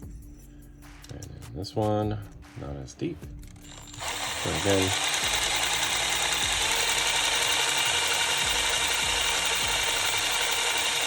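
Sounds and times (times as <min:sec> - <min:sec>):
small electric drill boring metal: 0:03.6 - 0:11.0.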